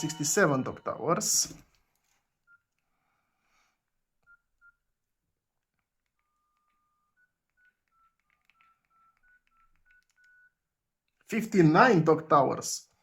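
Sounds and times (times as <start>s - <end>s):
phone keypad beeps: 6.2s - 10.6s.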